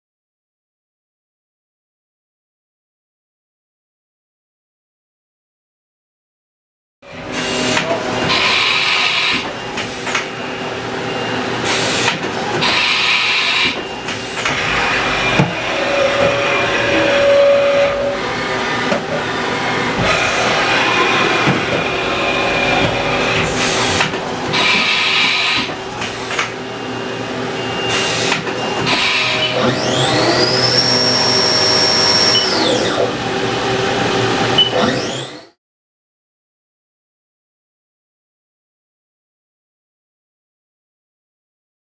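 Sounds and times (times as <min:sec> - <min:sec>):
milling machine running: 0:07.1 - 0:35.5
machine parts bursts of noise: 0:11.6 - 0:17.8, 0:20.0 - 0:26.4, 0:27.9 - 0:32.8
spindle whining: 0:12.8 - 0:33.0.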